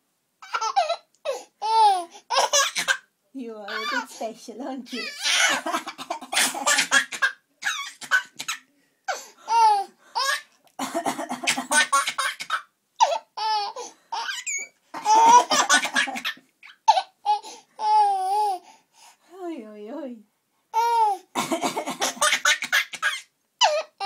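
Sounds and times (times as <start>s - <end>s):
baby laughing: 0.4s - 3.0s, 4.9s - 8.7s, 9.5s - 18.6s, 20.8s - 24.0s
woman coughing: 5.4s - 7.4s, 10.8s - 12.7s, 15.0s - 16.4s, 21.4s - 23.1s.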